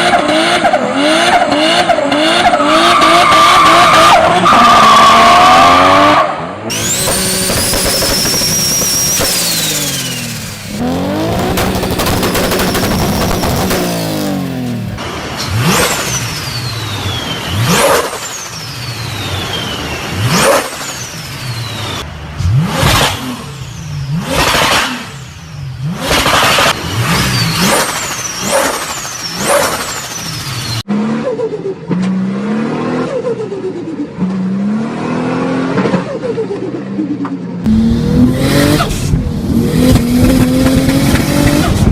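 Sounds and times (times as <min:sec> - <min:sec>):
car accelerating: 0:00.0 - 0:18.4, 0:37.6 - 0:41.9
turbo whistle and flutter: 0:06.7 - 0:10.4
turbo engine revving: 0:06.7 - 0:18.6, 0:19.2 - 0:33.2, 0:37.6 - 0:41.9.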